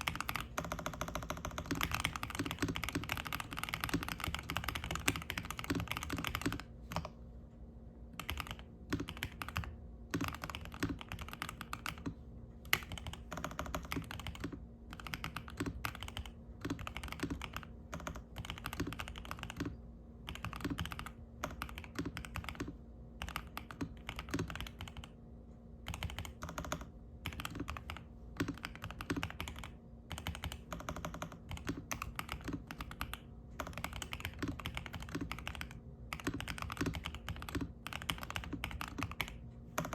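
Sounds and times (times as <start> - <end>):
mechanical keyboard typing: 0.0 - 7.2, 8.2 - 25.2, 25.9 - 39.9.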